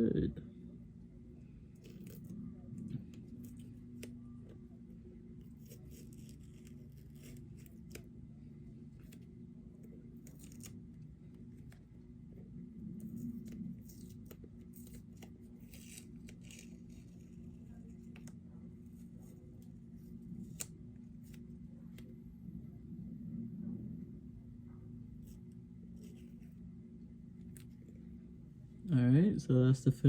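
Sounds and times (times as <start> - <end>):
steady low hum: 0.0 - 30.0
tape peeling crackles: 1.7 - 4.6, 5.4 - 8.2, 9.0 - 11.9, 13.0 - 18.4, 20.3 - 22.1.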